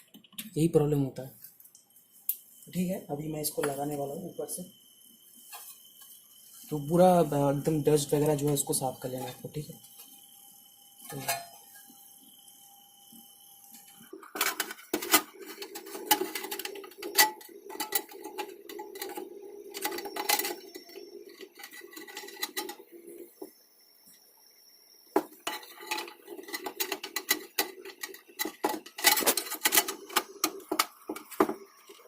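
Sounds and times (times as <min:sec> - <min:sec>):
fan humming: 0:00.0 - 0:23.6, 0:25.0 - 0:32.0
metal clattering and clicking: 0:25.4 - 0:31.6.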